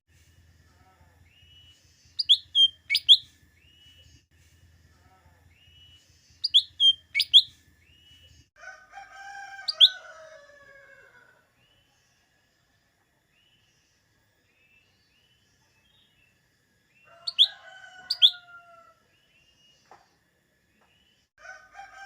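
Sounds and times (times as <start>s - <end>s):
bird whistling song: 1.3s - 4.1s, 5.6s - 8.3s, 9.7s - 10.0s, 17.3s - 18.4s.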